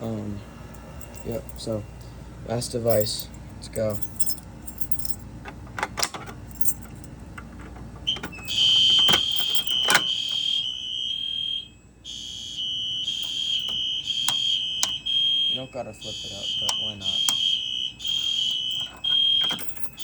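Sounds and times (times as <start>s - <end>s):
fire alarm horn steady tone: 8.0s - 20.0s.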